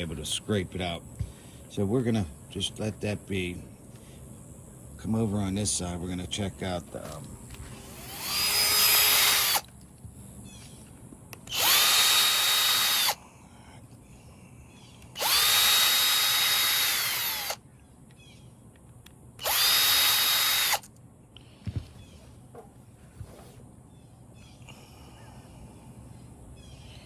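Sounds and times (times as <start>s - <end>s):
electric drill whining: 7.7s - 9.7s, 11.5s - 13.2s, 15.2s - 17.6s, 19.4s - 20.9s.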